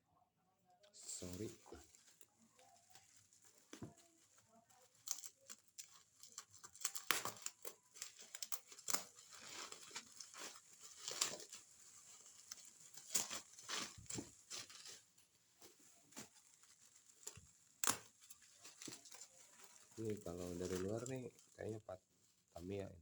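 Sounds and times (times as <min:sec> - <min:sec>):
packaging tearing and crinkling: 0:02.8 - 0:21.4
sharp snaps and clicks: 0:05.0 - 0:09.7, 0:17.2 - 0:18.9.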